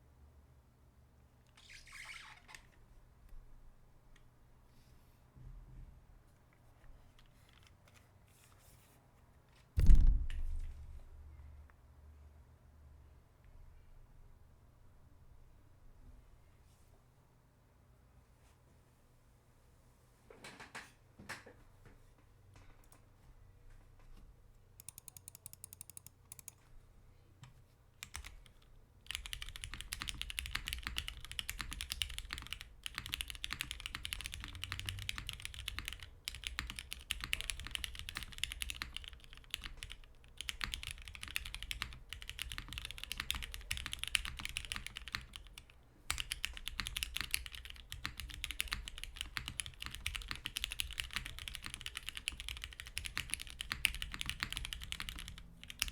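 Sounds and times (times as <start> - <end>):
mechanical keyboard typing: 24.8 - 26.6, 28.0 - 55.9.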